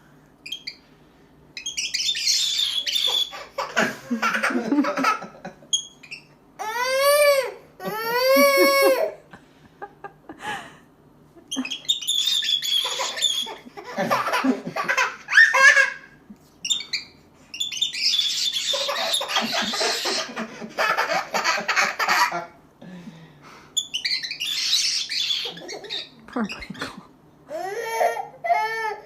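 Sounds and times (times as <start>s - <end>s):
baby laughing: 2.8s - 5.5s, 6.6s - 9.2s, 12.6s - 16.2s, 18.3s - 22.6s, 25.3s - 29.0s
baby squealing cries: 6.6s - 9.1s, 12.2s - 13.7s, 18.0s - 20.3s, 27.5s - 29.0s.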